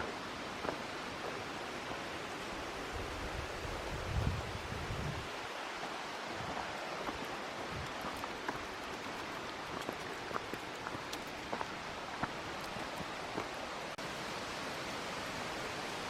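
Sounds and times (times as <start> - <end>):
rushing mountain water: 0.0 - 16.0
wind buffeting microphone: 2.9 - 5.5.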